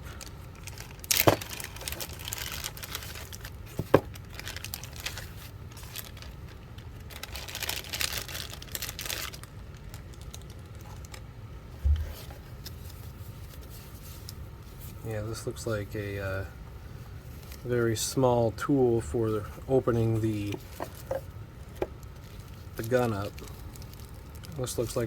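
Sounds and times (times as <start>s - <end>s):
packaging crinkling and tearing: 0.2s - 11.3s, 20.1s - 25.0s
short dull thud: 11.8s - 12.3s.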